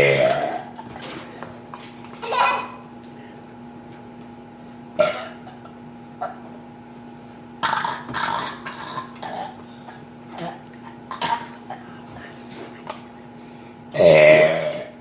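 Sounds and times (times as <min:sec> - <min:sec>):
person burping: 0:00.0 - 0:00.8, 0:05.0 - 0:05.6, 0:07.6 - 0:11.6, 0:13.9 - 0:15.0.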